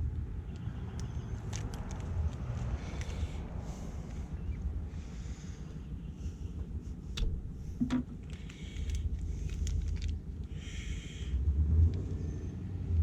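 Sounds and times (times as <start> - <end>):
low rumble of wind on microphone: 0.0 - 13.0
rustling and scraping: 6.4 - 10.6.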